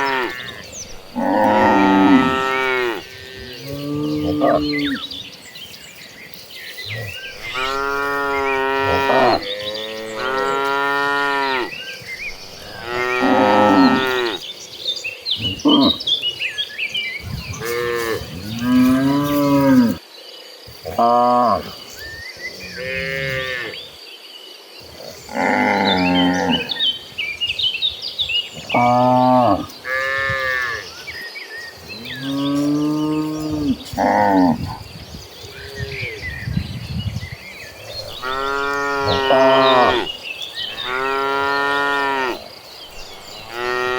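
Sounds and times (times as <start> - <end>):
cattle mooing: 0.0 - 5.0, 7.4 - 11.8, 12.6 - 14.4, 38.2 - 40.1
high insect drone: 0.0 - 43.9.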